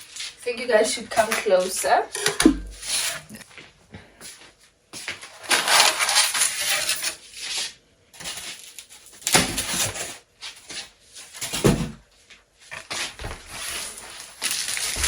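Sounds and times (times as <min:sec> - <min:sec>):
sharp knock: 0:02.2 - 0:02.8
cardboard and plastic crinkling: 0:05.1 - 0:07.2, 0:08.2 - 0:11.5, 0:12.7 - 0:15.0.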